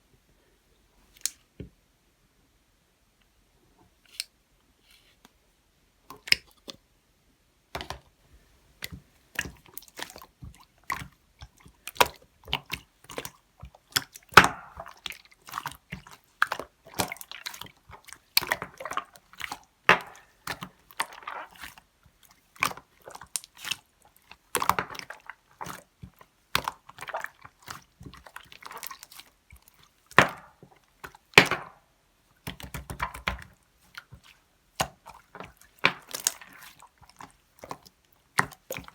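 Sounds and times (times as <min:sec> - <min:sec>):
slime squishing and popping: 0:09.4 - 0:21.8, 0:32.4 - 0:38.9.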